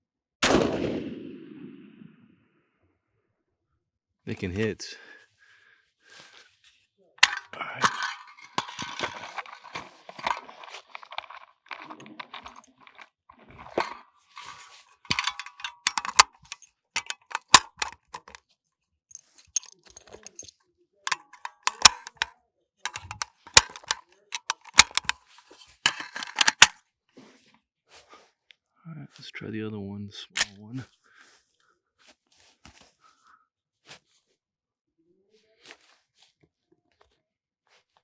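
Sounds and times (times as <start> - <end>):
rustling: 7.2 - 18.4
sharp clicks and rattles: 7.2 - 18.4, 19.5 - 20.5, 21.1 - 22.3, 22.9 - 25.2, 25.9 - 26.8.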